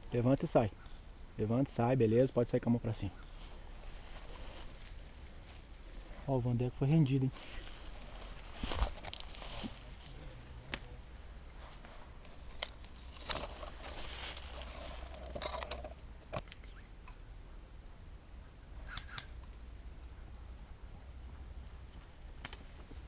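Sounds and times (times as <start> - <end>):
rustling: 3.2 - 16.4
faint high chirp: 15.9 - 23.0
sharp clicks: 18.9 - 19.5, 22.4 - 22.7.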